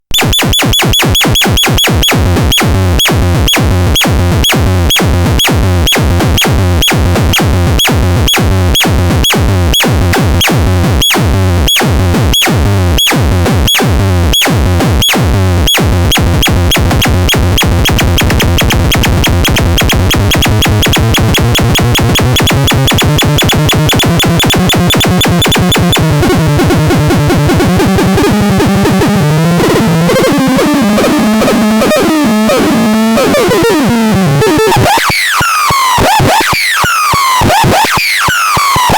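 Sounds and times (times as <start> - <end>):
synthesized percussive zaps: 9.8 - 38.9.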